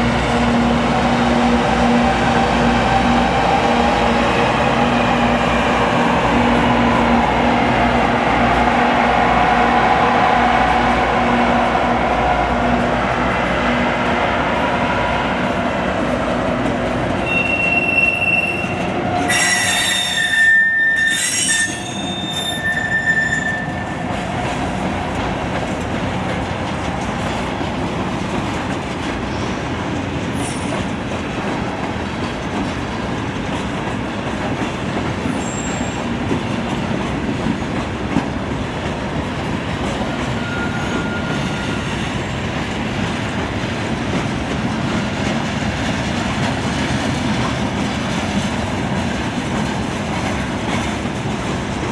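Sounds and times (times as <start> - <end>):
train wheels rumbling on rail: 0.0 - 51.9
train wheels squealing: 17.2 - 24.1, 30.4 - 30.9, 35.2 - 36.2, 40.0 - 42.4.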